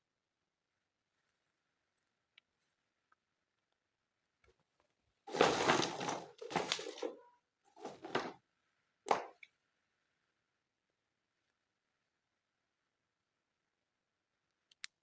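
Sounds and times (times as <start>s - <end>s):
toy packaging rustling: 5.3s - 7.2s, 7.8s - 8.4s.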